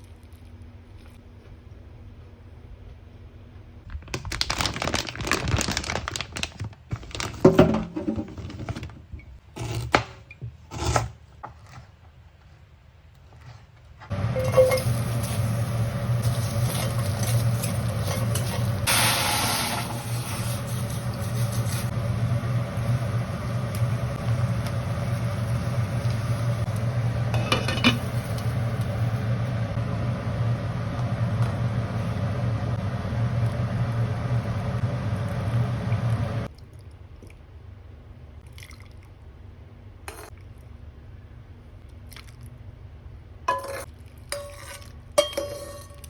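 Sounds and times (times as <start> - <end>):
food sizzling in a pan: 14.1 - 29.4
low hum: 14.1 - 36.5.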